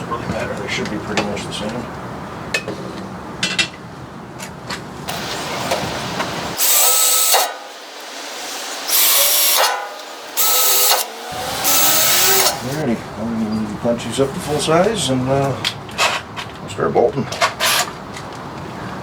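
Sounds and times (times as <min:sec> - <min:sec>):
power drill boring into steel: 0:05.1 - 0:12.8.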